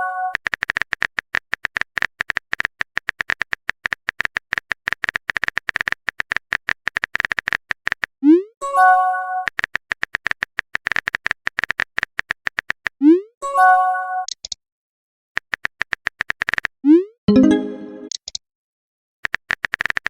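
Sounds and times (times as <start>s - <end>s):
keyboard typing clicks: 14.3s - 14.6s
chiming message-sent tone: 17.3s - 18.1s.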